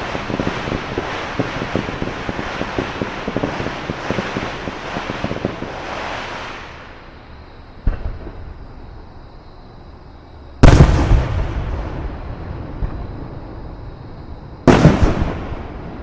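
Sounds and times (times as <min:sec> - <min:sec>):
fireworks crackling pops: 0:00.0 - 0:07.2, 0:07.8 - 0:08.7, 0:10.6 - 0:13.3, 0:14.6 - 0:16.0.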